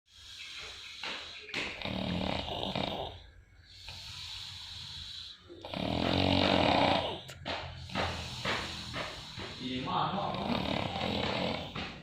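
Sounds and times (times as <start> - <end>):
person snoring: 1.8 - 12.0
quiet breath: 3.1 - 6.6, 7.2 - 11.9.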